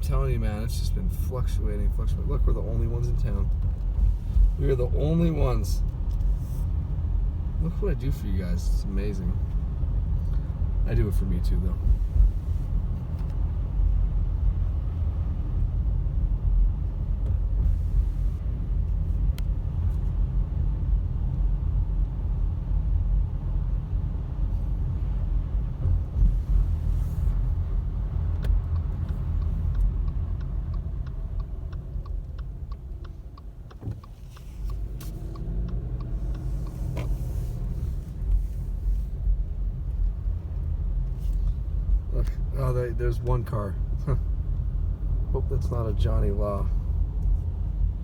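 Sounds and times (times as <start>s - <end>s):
car interior driving rumble: 0.0s - 48.0s
faint ticks: 28.4s - 37.7s.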